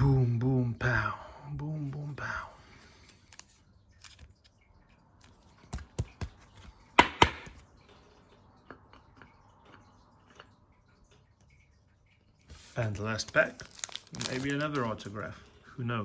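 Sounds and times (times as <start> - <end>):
cards tapping on a table: 5.7 - 7.6.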